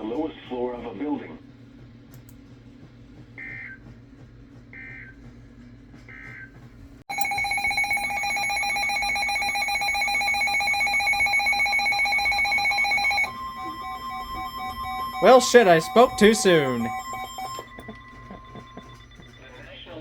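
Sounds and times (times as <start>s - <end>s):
digital data tone bursts: 7.1s - 19.1s
pulsing alert tone: 7.1s - 19.1s.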